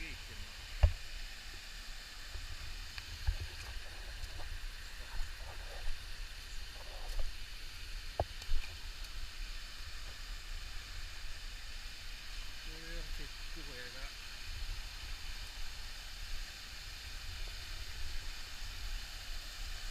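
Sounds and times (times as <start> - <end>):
stream rushing over rocks: 0.0 - 19.9.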